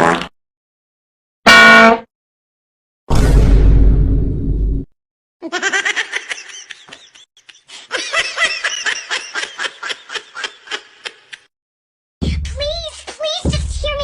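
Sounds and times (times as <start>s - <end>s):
high-pitched laughter effect: 5.4s - 11.5s.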